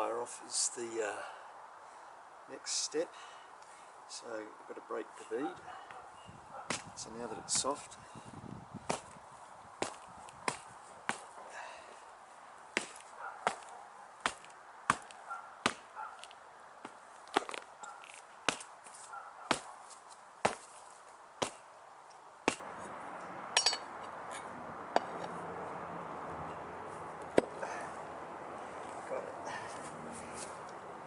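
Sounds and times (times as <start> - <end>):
sharp knocks on tyre rim: 6.7 - 6.9.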